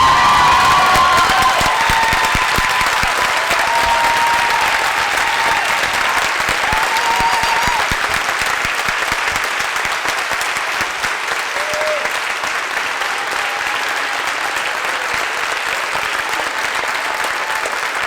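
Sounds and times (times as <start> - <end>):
audience applauding: 0.0 - 18.0.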